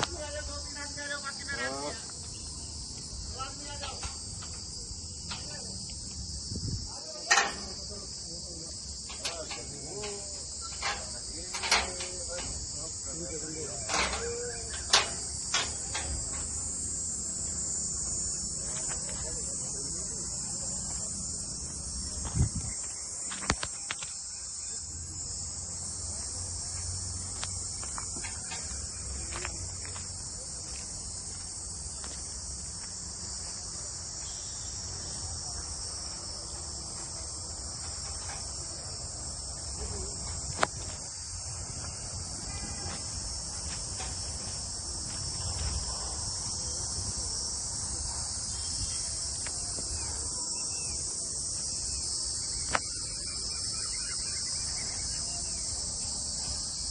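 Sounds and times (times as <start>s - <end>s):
insects chirring: 0.0s - 56.9s.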